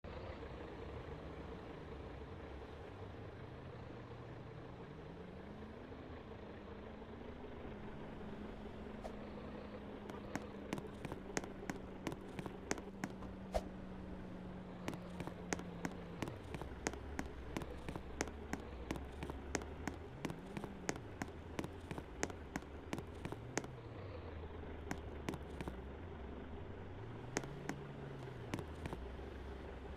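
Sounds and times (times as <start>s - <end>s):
vehicle engine running: 0.0s - 29.9s
rapid sharp clicks: 10.1s - 13.2s, 14.9s - 23.7s, 24.9s - 25.8s, 27.4s - 29.0s.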